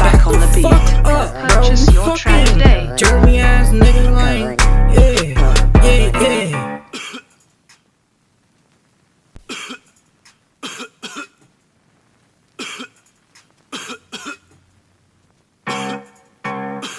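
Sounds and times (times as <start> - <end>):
person coughing: 6.9 - 7.4, 9.4 - 10.0, 10.6 - 11.5, 12.6 - 13.0, 13.7 - 14.6.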